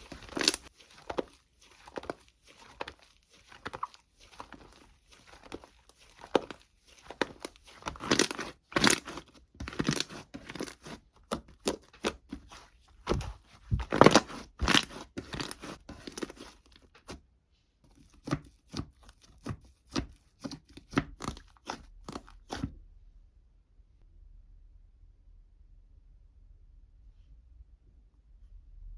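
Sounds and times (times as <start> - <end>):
crinkly material crackling: 0.0 - 17.2.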